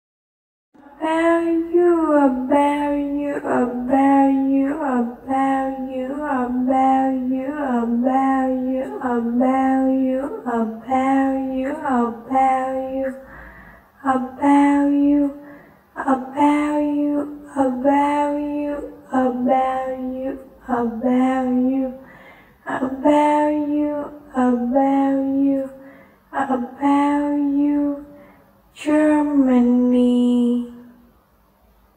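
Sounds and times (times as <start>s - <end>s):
high voice singing: 0.8s - 13.3s, 14.0s - 15.4s, 22.7s - 25.8s.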